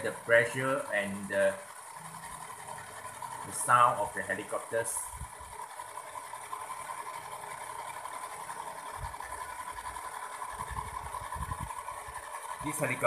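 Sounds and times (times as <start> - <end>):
model helicopter whine: 0.0 - 13.0.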